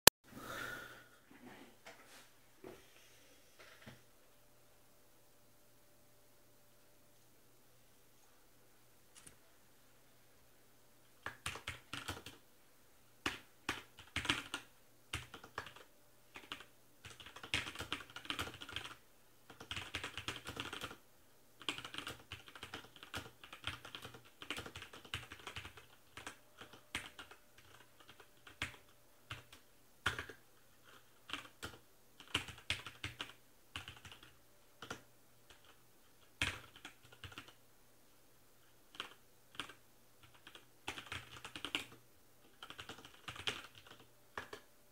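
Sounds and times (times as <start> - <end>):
mechanical keyboard typing: 11.2 - 12.4, 13.2 - 21.0, 21.6 - 37.6, 38.9 - 44.7.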